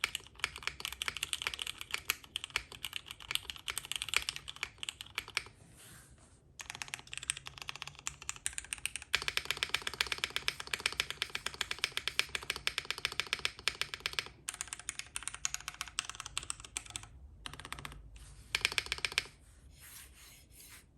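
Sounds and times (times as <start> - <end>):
mechanical keyboard typing: 0.0 - 5.5, 6.6 - 19.4.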